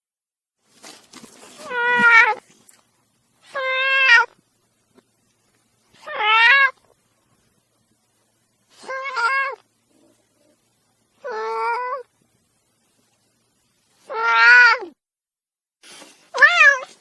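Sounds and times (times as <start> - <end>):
angry cat meowing: 3.4 - 4.4, 6.0 - 6.8, 8.8 - 9.6, 14.1 - 15.0
cat hissing: 8.7 - 10.6.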